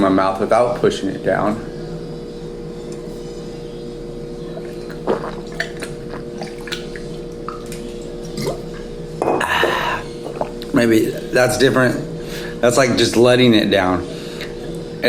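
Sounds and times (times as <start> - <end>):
steady background hum: 0.0 - 15.0
man swallowing water: 4.5 - 11.3
breathy noise: 9.3 - 10.6.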